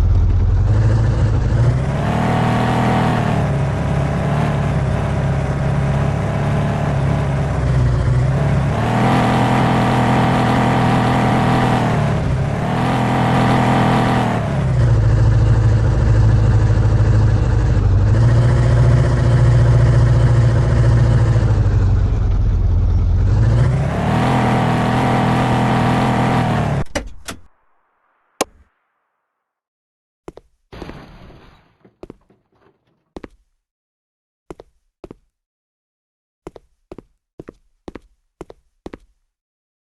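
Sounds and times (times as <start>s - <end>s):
car engine revving: 0.0s - 26.9s.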